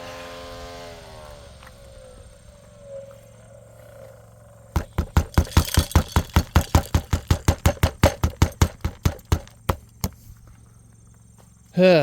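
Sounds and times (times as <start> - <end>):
feeder spinner rattling: 4.7 - 10.2.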